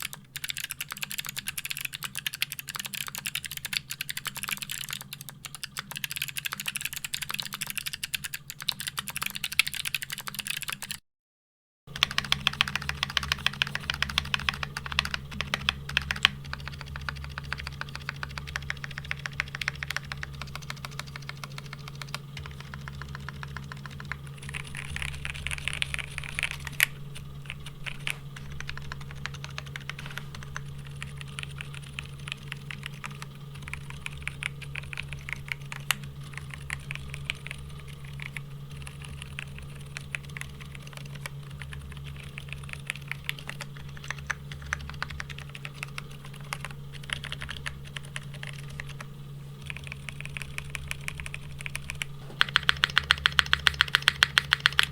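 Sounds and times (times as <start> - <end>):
soft muted keyboard key presses: 0.0 - 11.0, 11.9 - 26.9, 49.7 - 54.9
steady low hum: 0.0 - 11.0, 11.9 - 54.9.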